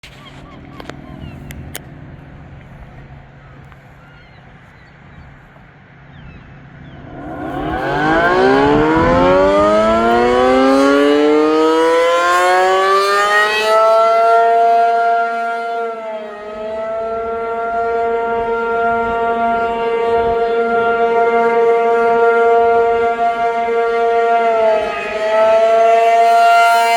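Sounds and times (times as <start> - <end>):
warning siren winding up: 7.1 - 26.9.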